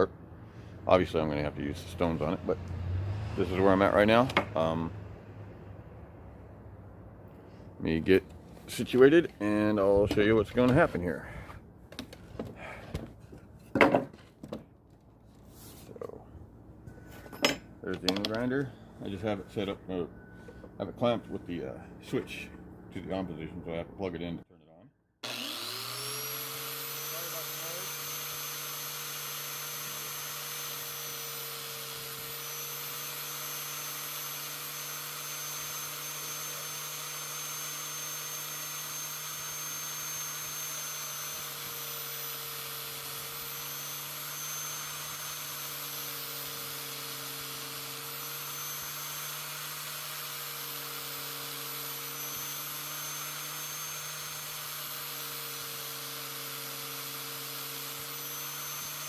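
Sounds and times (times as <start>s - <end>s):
angle grinder whining: 0.7s - 5.0s, 25.2s - 59.0s.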